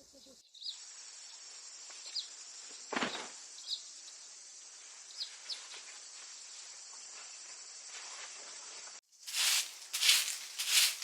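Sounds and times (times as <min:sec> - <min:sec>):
insects buzzing high-pitched: 0:09.1 - 0:11.0
loud rustling: 0:09.3 - 0:11.0.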